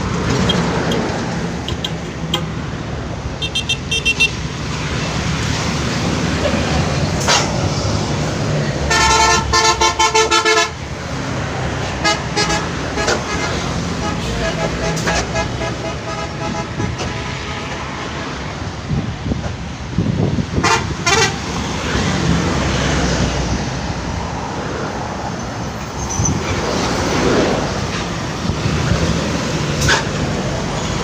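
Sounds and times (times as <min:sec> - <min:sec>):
bus engines running: 0:00.0 - 0:31.0
musical multi-tone bus horn: 0:03.4 - 0:04.4, 0:07.2 - 0:07.6, 0:08.8 - 0:10.8, 0:11.9 - 0:18.4, 0:20.6 - 0:21.6, 0:29.8 - 0:31.0.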